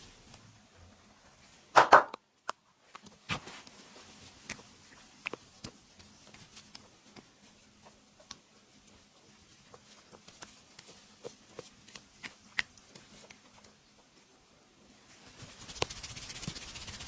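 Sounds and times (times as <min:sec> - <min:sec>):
hands massaging skin: 0:02.9 - 0:14.2, 0:15.2 - 0:17.0.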